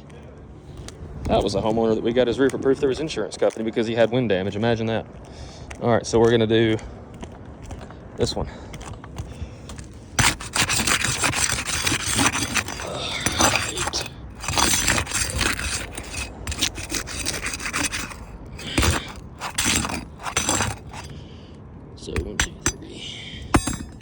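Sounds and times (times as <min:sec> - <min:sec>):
tool scraping roof shingles: 0:08.6 - 0:21.2, 0:22.2 - 0:22.8, 0:23.4 - 0:24.0.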